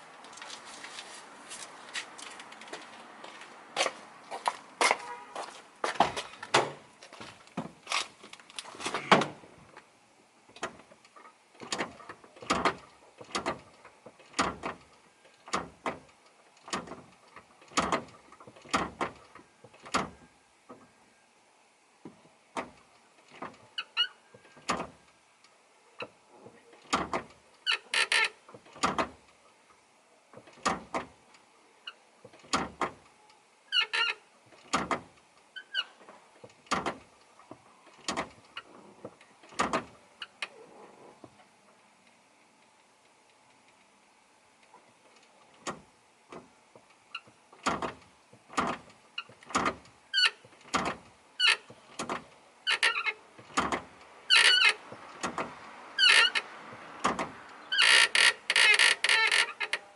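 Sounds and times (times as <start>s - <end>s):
clutch pedal squeaking: 26.8s - 29.2s, 33.7s - 38.8s, 47.1s - 56.4s, 57.0s - 59.8s.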